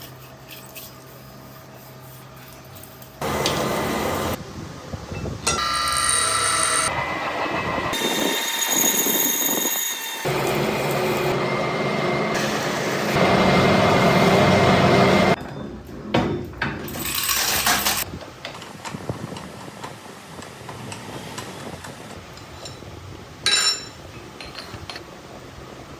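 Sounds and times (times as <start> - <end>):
high ringing tones: 5.5 - 7.0
metal lathe cutting metal: 5.5 - 15.4.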